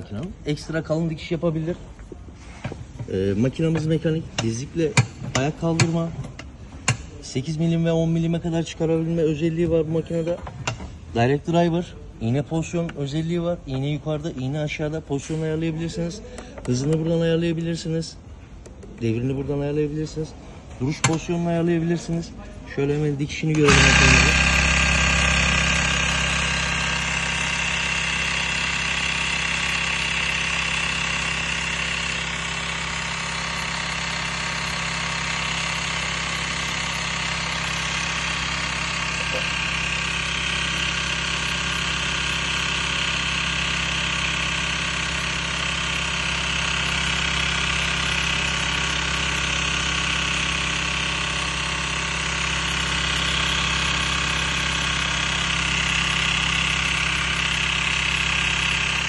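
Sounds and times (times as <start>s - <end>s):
sewing machine running: 23.6s - 59.0s.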